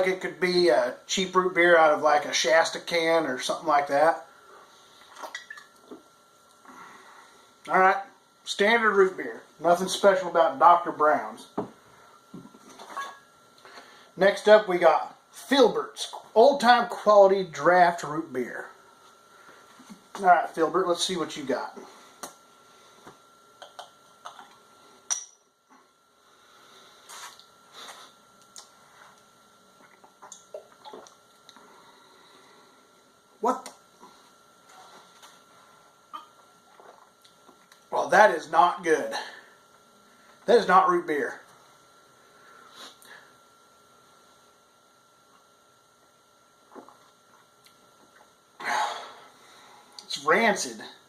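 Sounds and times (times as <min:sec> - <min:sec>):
faint electrical hum: 0:00.0 - 0:51.0
glass bottle clink: 0:25.1 - 0:25.4.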